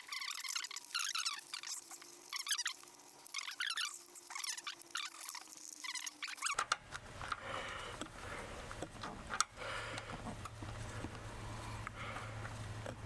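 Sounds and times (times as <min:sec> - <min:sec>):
steady low hum: 0:06.7 - 0:13.0.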